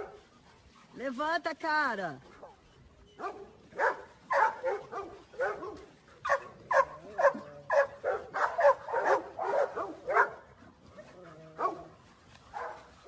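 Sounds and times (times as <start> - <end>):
dog barking: 0.0 - 0.3, 3.2 - 10.5, 11.6 - 11.9, 12.5 - 12.9.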